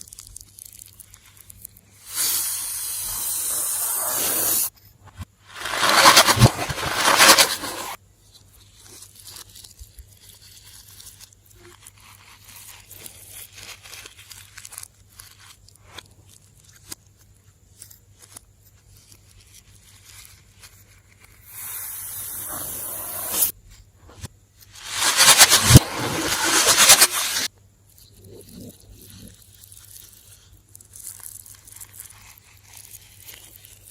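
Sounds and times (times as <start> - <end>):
loud hissing burst: 2.1 - 4.7, 5.6 - 8.0, 21.6 - 23.5, 24.8 - 27.5.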